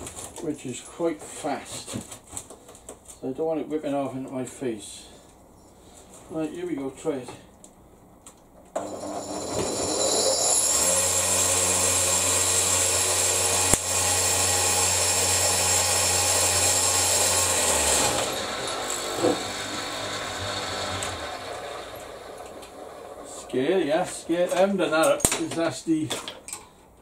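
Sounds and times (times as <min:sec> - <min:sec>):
belt sander running: 0:08.8 - 0:23.6.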